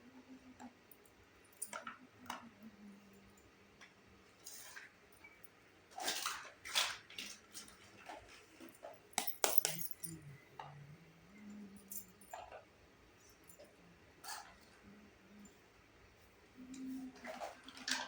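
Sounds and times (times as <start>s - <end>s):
toy kitchen pieces clicking: 5.9s - 8.4s.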